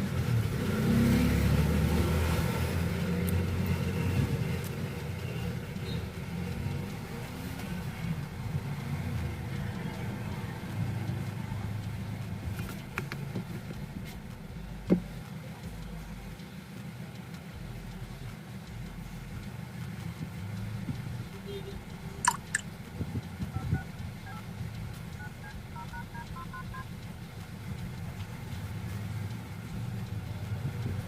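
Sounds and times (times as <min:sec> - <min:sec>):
low steady rumble: 0:02.8 - 0:31.0
sharp clicks: 0:17.1 - 0:31.0
short electronic beeps: 0:22.2 - 0:22.6, 0:23.5 - 0:24.5, 0:25.2 - 0:26.9.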